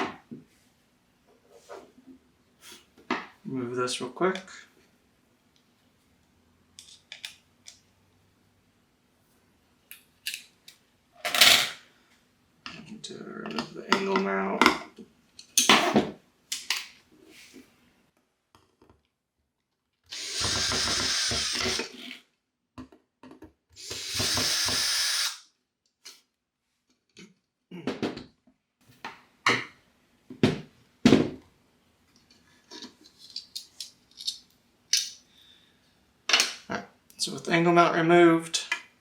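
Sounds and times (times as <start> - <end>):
power drill running: 20.1 - 22.0.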